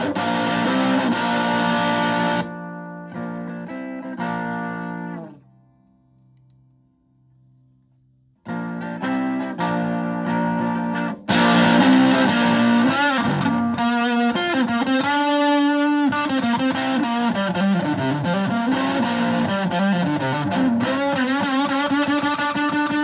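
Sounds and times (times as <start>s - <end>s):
electric guitar lead lines: 0.0s - 5.4s, 8.4s - 23.0s.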